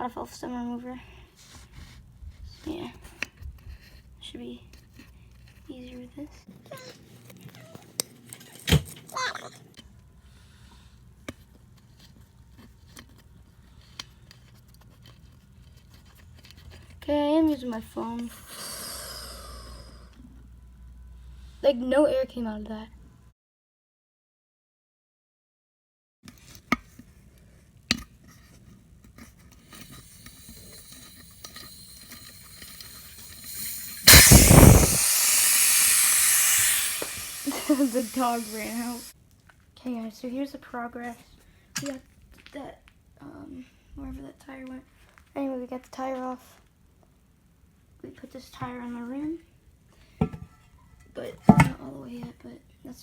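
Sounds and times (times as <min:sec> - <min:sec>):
valve core remover clicking: 0:29.7 - 0:39.1.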